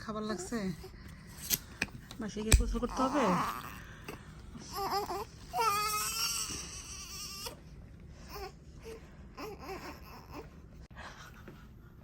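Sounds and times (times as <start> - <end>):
newborn baby crying: 2.7 - 3.9, 4.6 - 7.6, 8.3 - 10.5.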